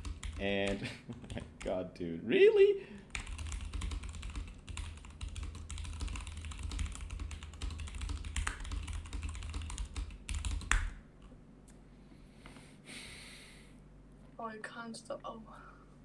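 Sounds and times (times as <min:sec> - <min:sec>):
keyboard typing: 0:00.0 - 0:01.8, 0:03.0 - 0:11.0.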